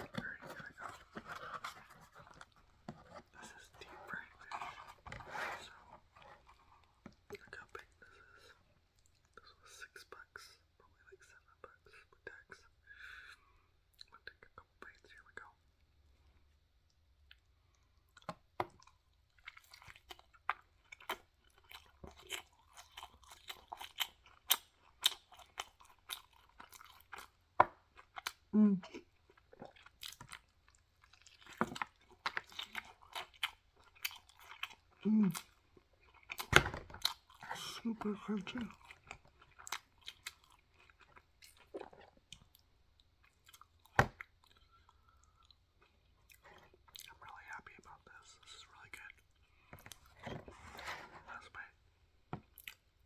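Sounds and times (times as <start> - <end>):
crunchy chewing: 18.2 - 28.4, 29.2 - 42.6.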